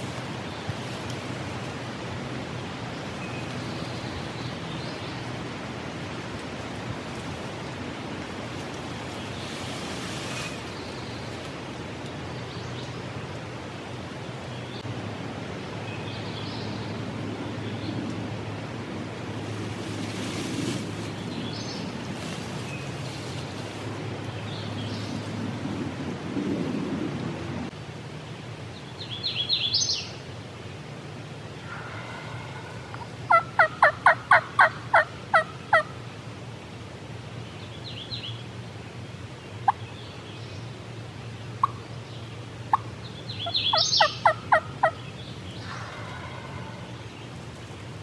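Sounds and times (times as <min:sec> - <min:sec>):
outdoor background hiss: 0:00.0 - 0:48.0
songbird chirps: 0:28.2 - 0:30.9, 0:31.6 - 0:48.0.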